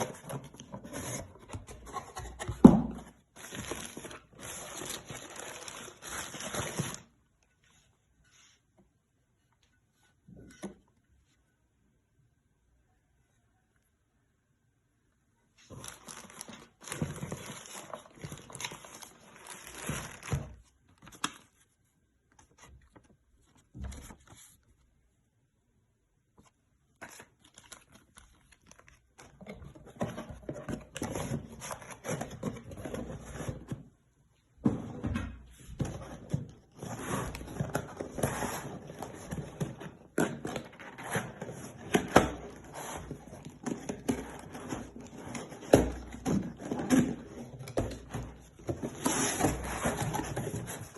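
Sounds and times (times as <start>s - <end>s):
packaging rustling and crinkling: 3.3s - 7.2s, 15.6s - 21.6s, 35.8s - 50.9s.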